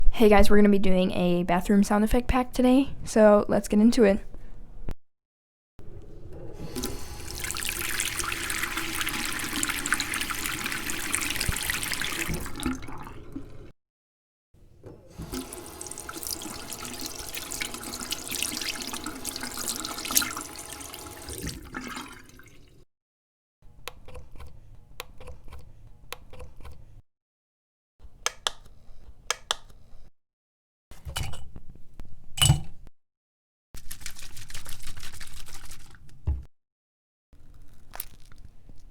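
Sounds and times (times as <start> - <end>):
water splashing into sink: 6.6 - 13.7, 15.1 - 22.8.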